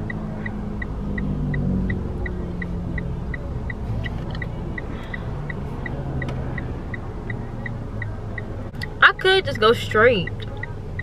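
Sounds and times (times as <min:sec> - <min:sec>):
high electronic dashboard beep: 0:00.0 - 0:08.5
car engine and road rumble: 0:00.0 - 0:11.0.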